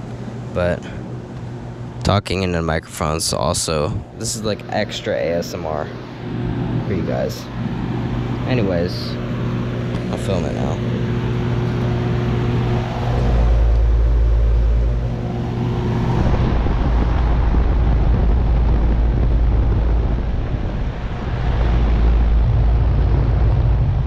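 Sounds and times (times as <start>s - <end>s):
air conditioner compressor hum: 0.0s - 24.0s
condenser fan rushing: 0.0s - 24.0s
wind rumble on microphone: 5.9s - 24.0s.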